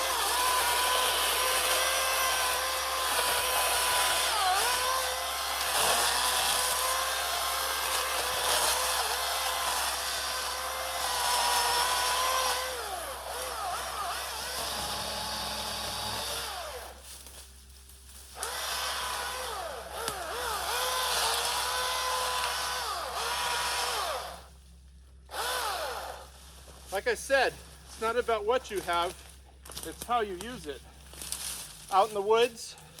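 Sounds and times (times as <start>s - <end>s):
electric chainsaw motor whine: 0.0s - 17.0s, 18.4s - 24.5s, 25.3s - 26.4s.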